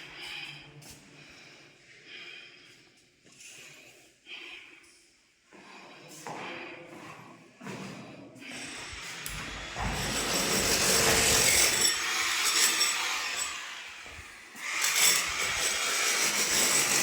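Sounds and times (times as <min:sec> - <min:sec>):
power tool running under load: 0:08.6 - 0:17.0.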